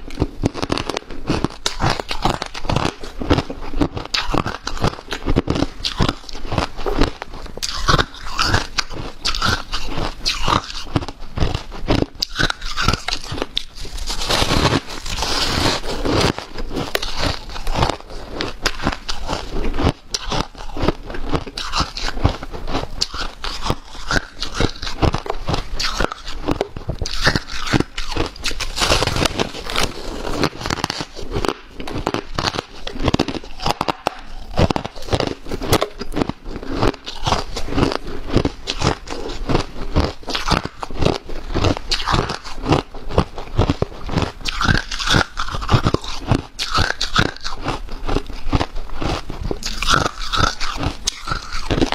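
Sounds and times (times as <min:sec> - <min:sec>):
chewing crunchy ice: 0:00.0 - 0:51.9.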